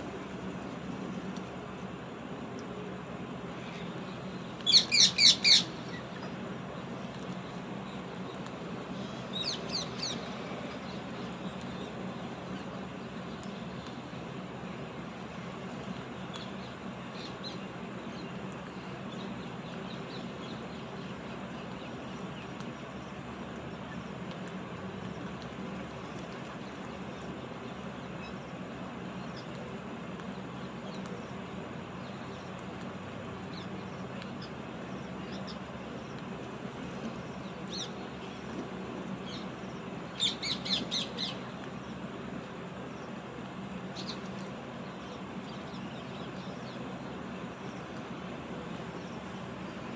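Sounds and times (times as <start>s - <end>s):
steady background hiss: 0.0s - 49.9s
birds chirping: 3.1s - 49.9s
loud bird calls: 3.6s - 6.3s, 39.1s - 41.6s.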